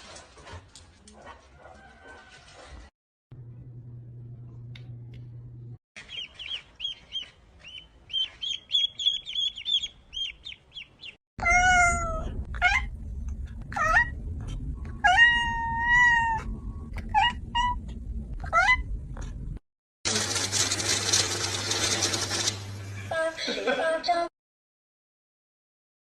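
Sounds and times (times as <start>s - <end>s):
cat meowing: 11.4s - 12.9s, 15.0s - 17.8s.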